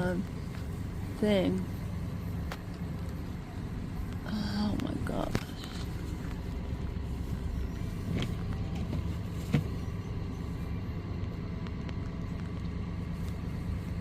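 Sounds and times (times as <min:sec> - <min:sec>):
vehicle engine humming: 0:00.0 - 0:14.0.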